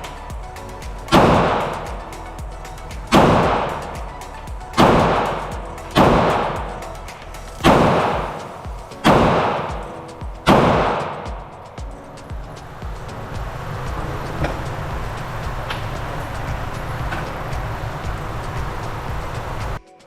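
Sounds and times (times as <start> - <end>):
pistol shots echoing: 10.5 - 11.2.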